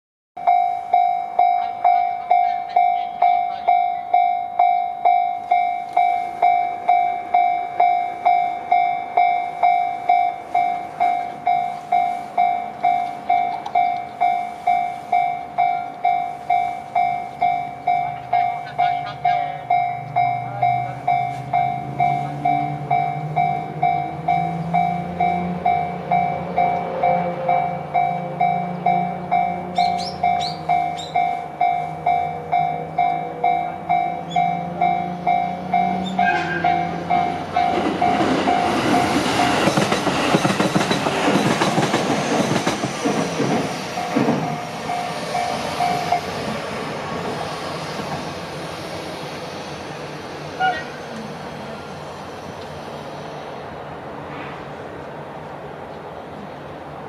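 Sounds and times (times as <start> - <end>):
level crossing bell dinging: 0.4 - 38.8
train rumbling: 0.4 - 57.0.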